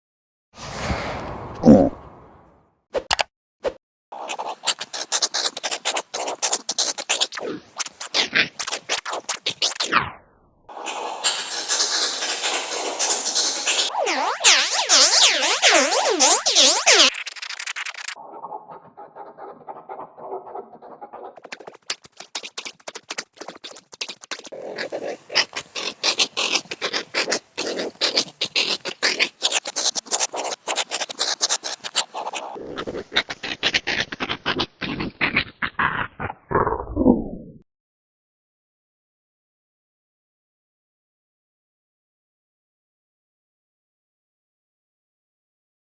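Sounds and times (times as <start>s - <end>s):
altered meerkat chirping: 13.9s - 36.5s.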